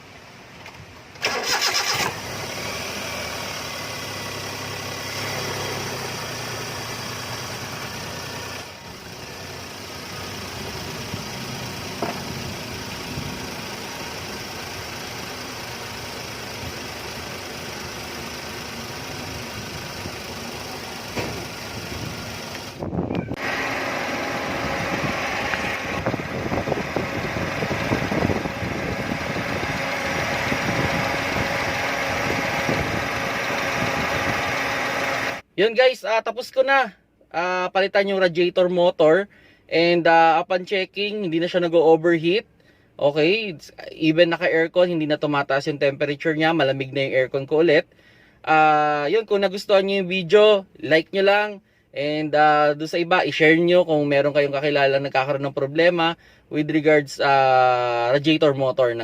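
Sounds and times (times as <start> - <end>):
car engine idling: 1.1 - 35.4.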